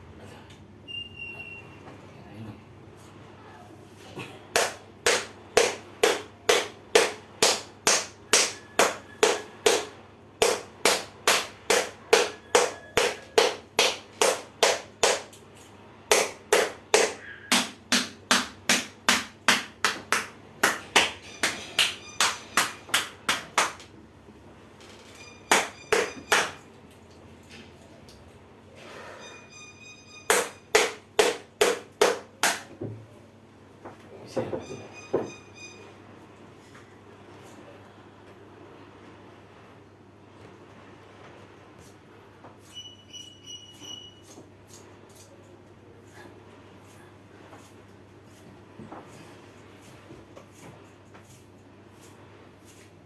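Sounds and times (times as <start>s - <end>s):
percussive strikes on a body: 4.6s - 15.3s, 16.1s - 21.6s, 30.3s - 32.7s.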